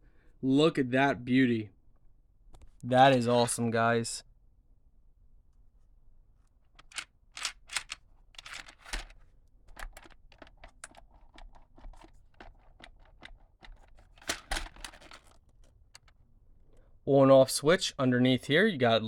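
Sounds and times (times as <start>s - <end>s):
plastic toy clicks and taps: 6.8s - 15.4s
packaging rustling: 6.8s - 16.1s.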